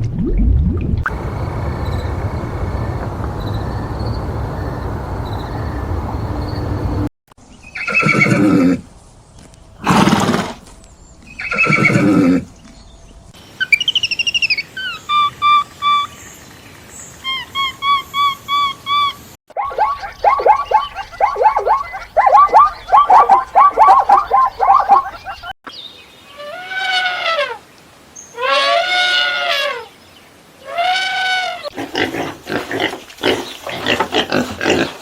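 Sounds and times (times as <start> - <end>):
high chirping calls: 1.1 - 7.1, 13.5 - 25.9
steady noisy rumble: 1.1 - 7.1
horse whinnying: 7.8 - 8.8.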